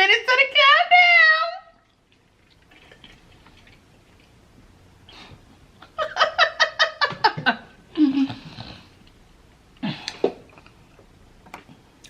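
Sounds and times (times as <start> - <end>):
woman laughing: 5.8 - 8.5.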